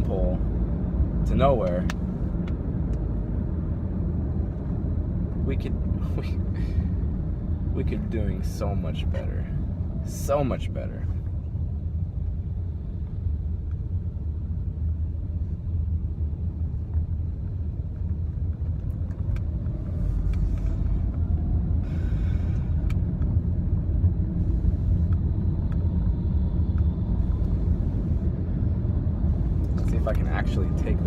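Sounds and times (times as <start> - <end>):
car road and engine noise: 0.0 - 31.0.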